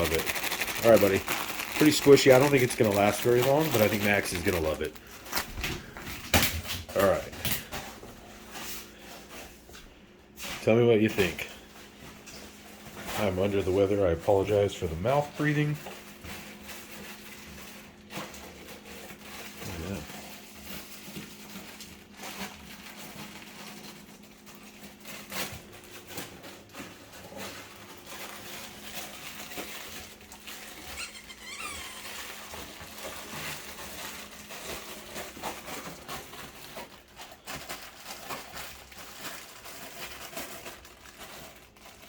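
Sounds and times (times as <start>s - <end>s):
dog chewing crinkly squeaker toy: 0.0s - 6.0s, 15.4s - 42.0s.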